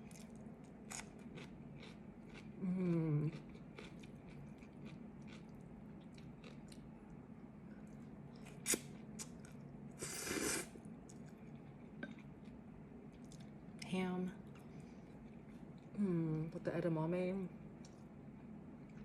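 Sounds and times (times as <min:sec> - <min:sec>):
chewing noodles mouth sounds: 0:00.0 - 0:06.9, 0:07.9 - 0:13.5.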